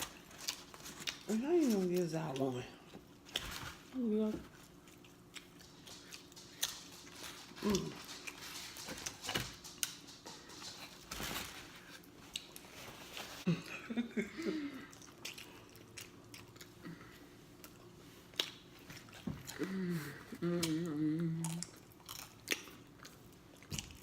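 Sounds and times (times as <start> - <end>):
chewing and smacking: 0.0 - 3.8, 4.6 - 11.1, 12.0 - 12.9, 14.8 - 19.7, 20.6 - 24.0.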